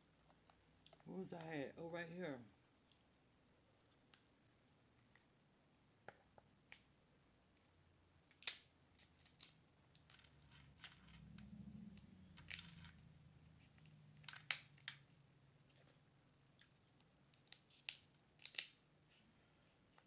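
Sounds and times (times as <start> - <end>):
crab shell cracking: 8.3 - 11.0, 17.3 - 18.8.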